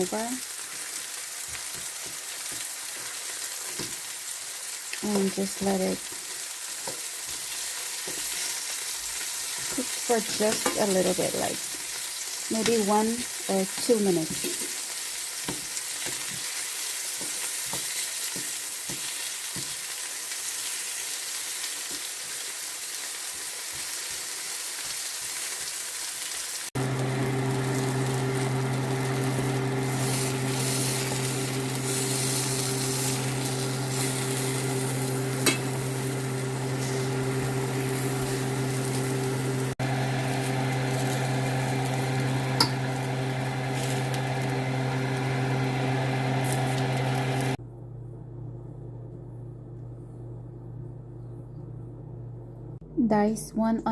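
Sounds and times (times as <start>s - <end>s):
vegetables sizzling in oil: 0.0s - 47.6s
low electrical hum: 26.8s - 53.9s.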